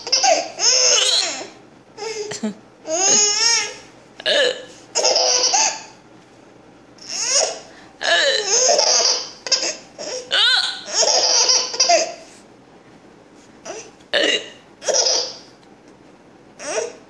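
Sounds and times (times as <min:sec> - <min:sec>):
baby laughing: 0:00.0 - 0:02.3, 0:05.0 - 0:06.0, 0:08.4 - 0:12.2.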